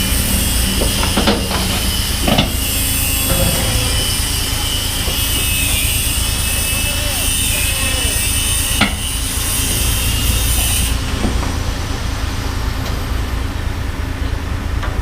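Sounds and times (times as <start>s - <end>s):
diesel engine rumbling: 0.0s - 15.0s
sharp metallic knock: 2.3s - 5.7s.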